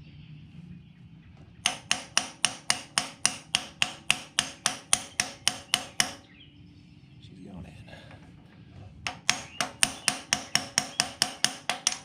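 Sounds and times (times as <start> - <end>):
hammer tapping on metal: 1.6 - 6.2, 9.0 - 12.0.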